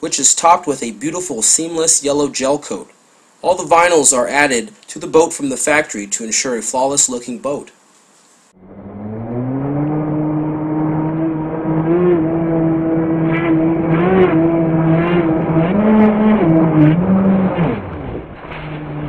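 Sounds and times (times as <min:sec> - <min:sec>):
rc boat motor drone: 0:08.6 - 0:19.0.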